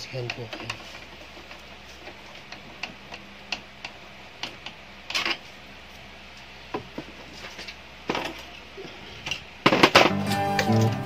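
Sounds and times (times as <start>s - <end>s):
plastic parts clattering: 9.2s - 11.0s.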